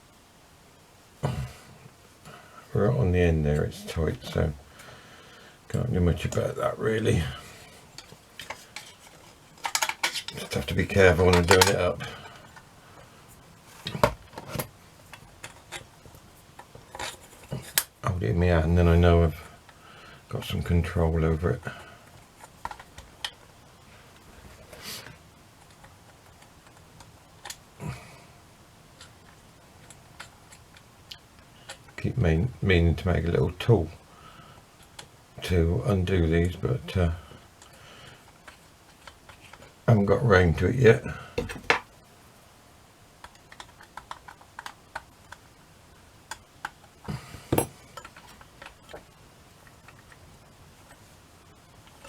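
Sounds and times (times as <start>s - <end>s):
clicks and knocks of clock parts: 8.0s - 10.5s, 11.2s - 12.6s.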